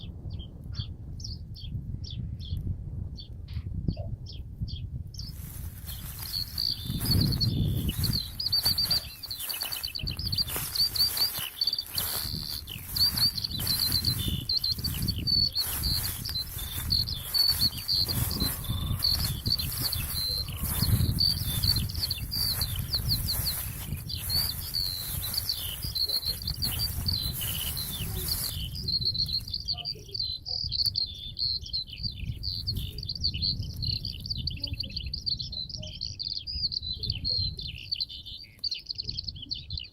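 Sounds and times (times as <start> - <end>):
songbirds chirping and trilling: 0.0 - 39.9
loud rustling with low rumble: 5.2 - 29.8.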